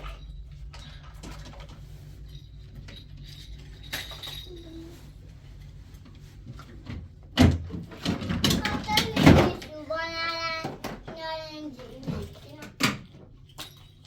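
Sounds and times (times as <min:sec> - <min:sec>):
colored pencils clinking: 0:00.0 - 0:05.7.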